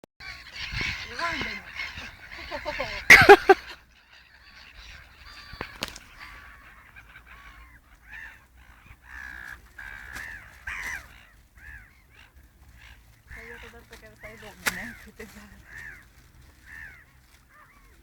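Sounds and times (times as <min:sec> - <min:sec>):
birds calling: 0:00.2 - 0:18.0.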